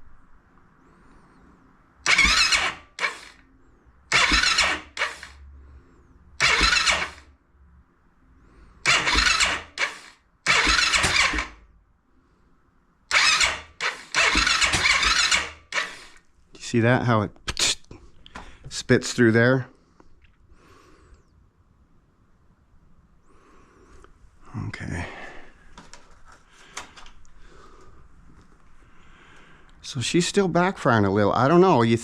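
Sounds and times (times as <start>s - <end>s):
engine cranking without starting: 2.0s - 3.5s, 4.1s - 5.4s, 6.4s - 7.3s, 8.8s - 11.6s, 13.1s - 16.2s
engine backfiring pops: 8.9s - 11.6s.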